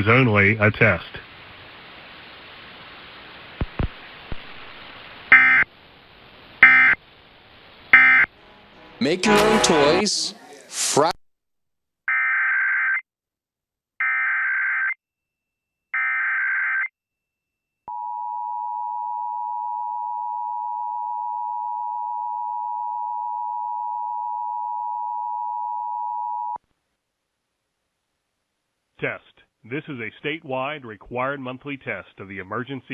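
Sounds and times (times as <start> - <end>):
two-tone attention signal: 5.3 - 5.6, 6.6 - 7.0, 8.0 - 8.4
screechy digital data bursts: 8.0 - 8.3.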